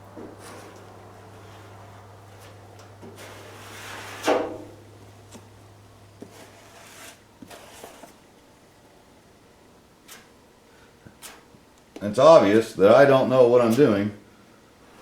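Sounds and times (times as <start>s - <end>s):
low steady hum: 0.0s - 15.0s
filler scraping on car panel: 6.2s - 8.2s.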